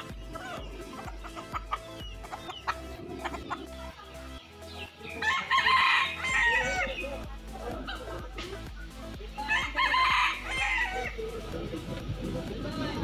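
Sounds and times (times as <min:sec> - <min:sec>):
chickens clucking: 0:00.0 - 0:13.0
rooster crowing: 0:05.2 - 0:06.9, 0:09.5 - 0:11.2.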